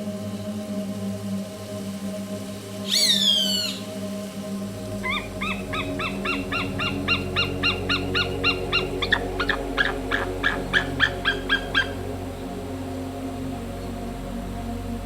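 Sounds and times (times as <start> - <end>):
low musical drone: 0.0 - 15.0
bird calling sharp notes: 2.9 - 3.8, 5.0 - 12.0.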